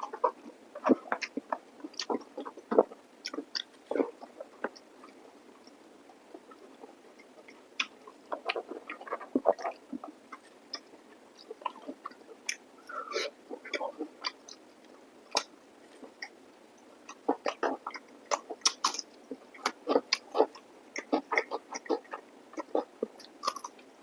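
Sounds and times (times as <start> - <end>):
wet chewing and mouth smacks: 0.1 - 6.6, 7.3 - 12.7, 17.1 - 23.9.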